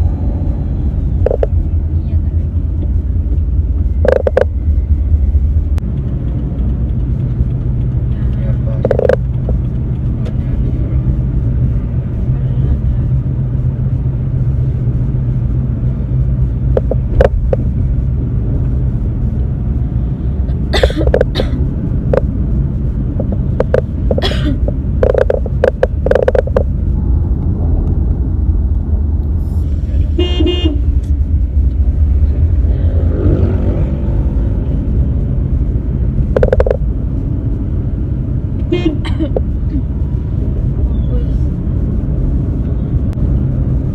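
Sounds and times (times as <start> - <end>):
car engine and road rumble: 0.0 - 43.9
person coughing: 20.7 - 21.6, 24.2 - 24.7, 38.8 - 39.4
car horn: 30.0 - 31.0, 38.6 - 39.3.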